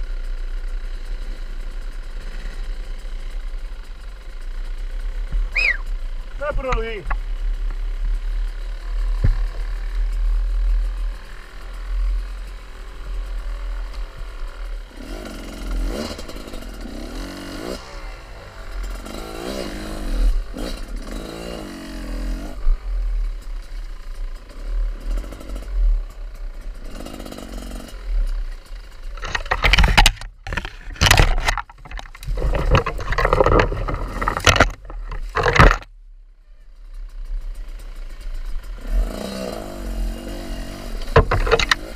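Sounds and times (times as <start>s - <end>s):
motorcycle engine revving: 0.0s - 35.9s, 36.6s - 41.9s
heavy low rumble: 5.1s - 15.7s
loud rough bursts: 5.4s - 23.4s, 24.4s - 28.2s.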